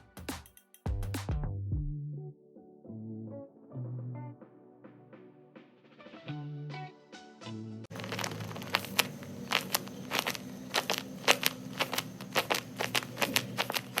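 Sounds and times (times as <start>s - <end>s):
paper crinkling and crackling: 7.9s - 14.0s.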